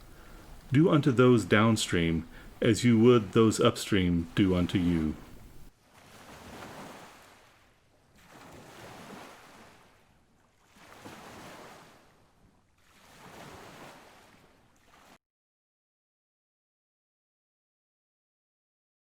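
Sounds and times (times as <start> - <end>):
faint waves washing in: 0.0 - 15.2.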